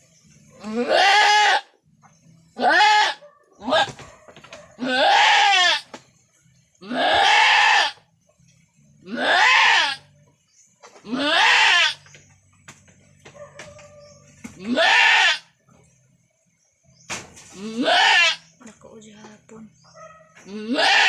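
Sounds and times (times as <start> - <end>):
goat bleating harshly: 0.6 - 1.7, 2.6 - 3.9, 4.8 - 5.9, 6.8 - 8.0, 9.0 - 10.1, 11.0 - 12.0, 14.6 - 15.5, 17.6 - 18.4, 20.5 - 21.0.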